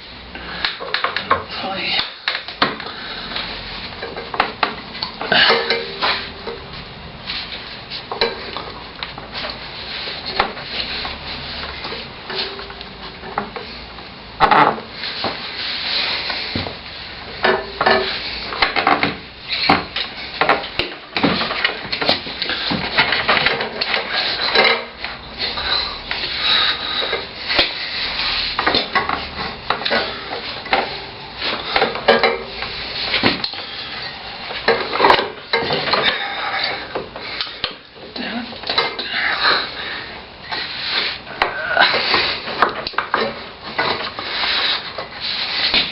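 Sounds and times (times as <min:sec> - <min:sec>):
metal tools clinking and scraping: 0:05.0 - 0:06.7, 0:21.3 - 0:37.7.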